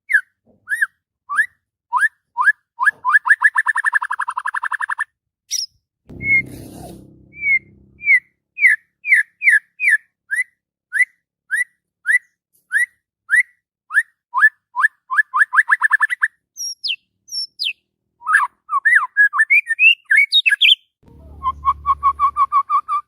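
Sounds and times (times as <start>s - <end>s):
bird singing whistled notes: 0.1s - 6.5s, 7.3s - 23.0s
low rumble: 6.1s - 8.3s.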